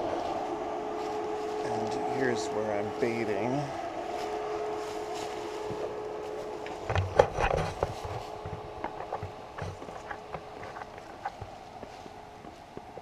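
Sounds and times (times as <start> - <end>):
rustling through brush: 0.0 - 13.0
knocks and dull thumps: 6.6 - 13.0.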